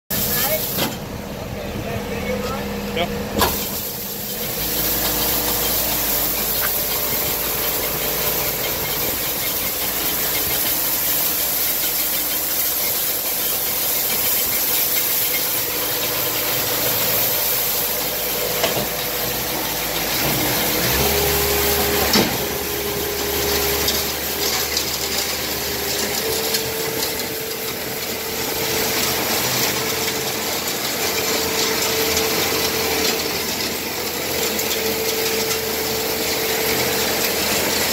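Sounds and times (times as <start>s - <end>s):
machine whine: 0.1s - 37.9s
skid steer running: 0.1s - 37.9s.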